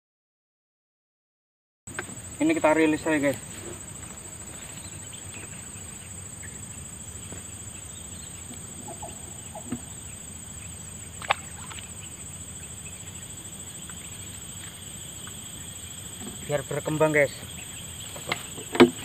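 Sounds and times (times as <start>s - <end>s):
insects pulsing chirr: 1.9s - 19.0s.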